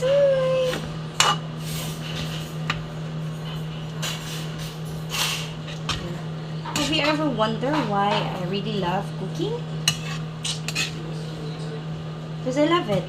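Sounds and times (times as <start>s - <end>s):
utensils clinking in a pan: 6.7s - 8.4s
utensils scraping a pan: 6.7s - 8.4s, 9.8s - 11.0s.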